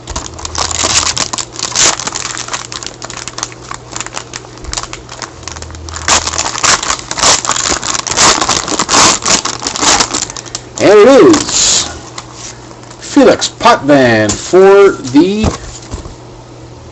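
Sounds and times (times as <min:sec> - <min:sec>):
plastic wrapper tearing and crinkling: 0:00.0 - 0:12.3.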